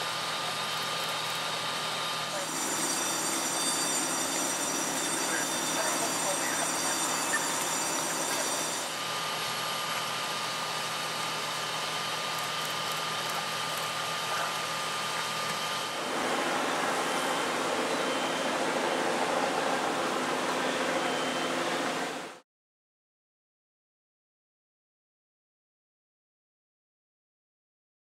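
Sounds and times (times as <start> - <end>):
fire truck engines idling: 0.0 - 22.4.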